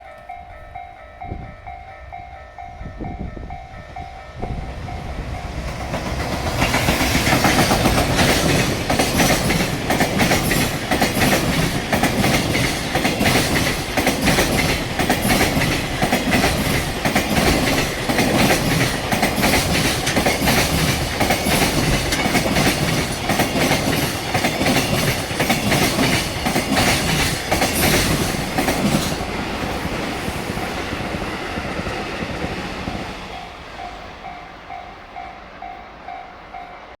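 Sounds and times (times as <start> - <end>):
level crossing warning bell: 0.0 - 29.4, 33.1 - 37.0
train wheels clattering over rail joints: 5.4 - 32.5.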